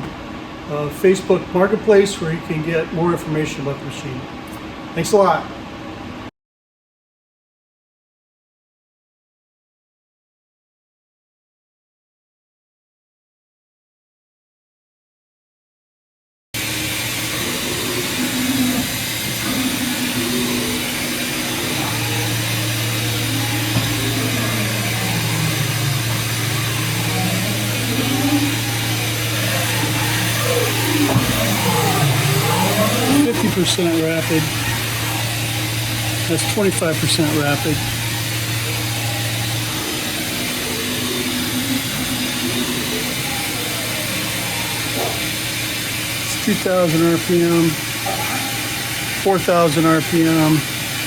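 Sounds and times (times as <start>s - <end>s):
machining center whirring: 0.0s - 6.3s, 16.6s - 51.0s
steady hum: 16.6s - 51.0s.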